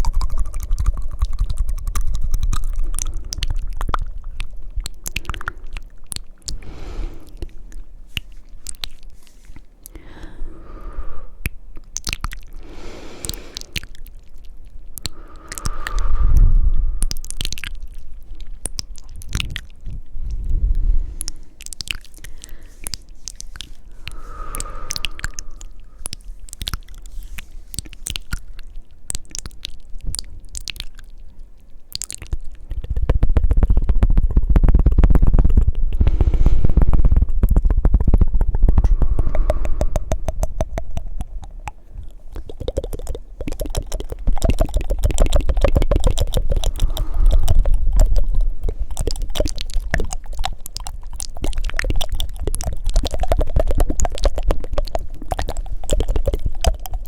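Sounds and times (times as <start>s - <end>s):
wet mouth sounds: 0.0s - 57.0s
breaths: 5.0s - 14.2s, 15.0s - 17.5s, 20.1s - 28.8s, 35.9s - 57.0s
low rumble: 15.0s - 18.2s, 19.2s - 21.7s, 34.0s - 42.2s, 44.2s - 50.0s.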